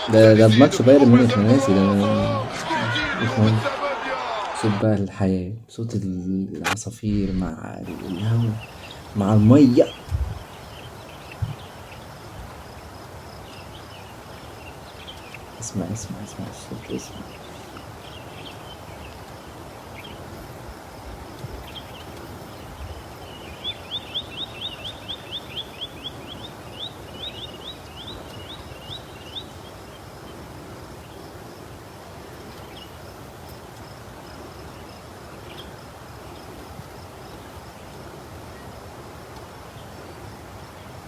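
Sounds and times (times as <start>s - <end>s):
wind rushing: 7.0s - 10.6s
small bird chirping: 7.1s - 20.4s, 21.2s - 30.3s.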